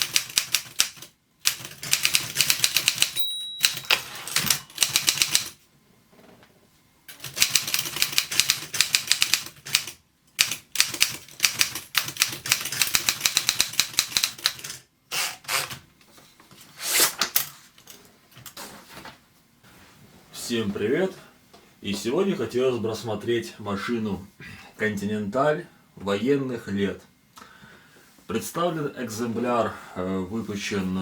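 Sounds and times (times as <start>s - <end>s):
manual typewriter typing: 0.0s - 5.6s, 7.1s - 15.8s.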